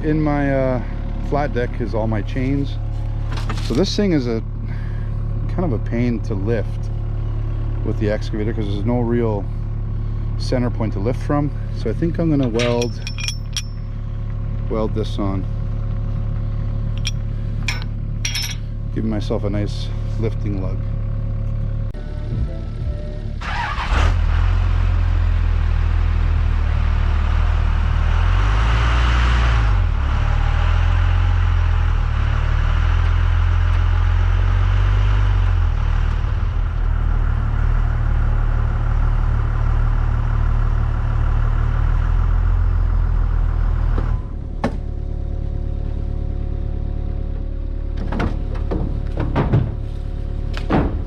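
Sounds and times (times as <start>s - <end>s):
engine starting and idling: 20.8s - 25.8s.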